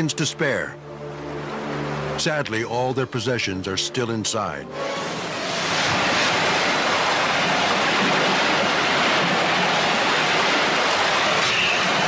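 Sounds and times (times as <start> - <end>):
floodwater rushing in river: 4.8 - 12.0.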